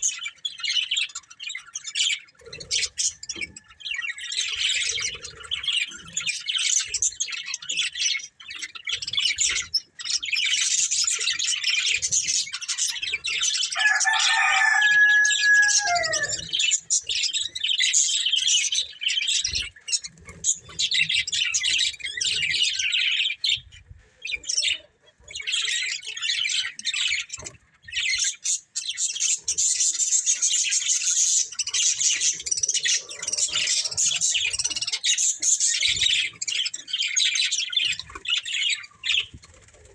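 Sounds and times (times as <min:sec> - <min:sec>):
budgerigars chirping and chattering: 0:00.0 - 0:39.9
lower held bird call: 0:13.8 - 0:16.4.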